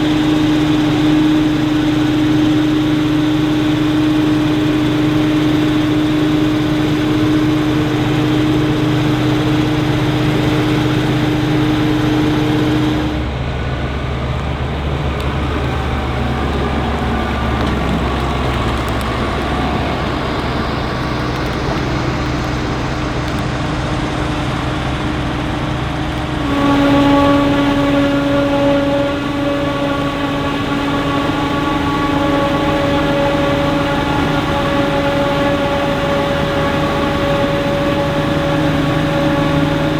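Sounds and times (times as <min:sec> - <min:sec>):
diesel engines of harvest machinery: 0:00.0 - 0:39.9
steady high whine: 0:00.0 - 0:39.9.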